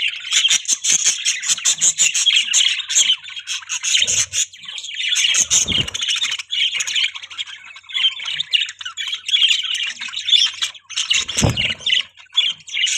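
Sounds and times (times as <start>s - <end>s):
budgerigars chattering: 0.0s - 12.9s
dull low thud: 11.3s - 11.9s.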